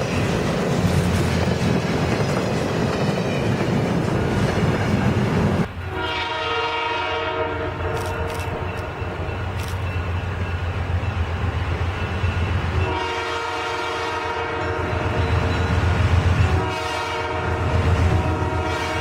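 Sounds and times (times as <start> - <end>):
locomotive engine rumble: 3.6 - 6.6
locomotive air horn blasts: 4.2 - 9.0, 12.8 - 15.2, 16.4 - 19.0.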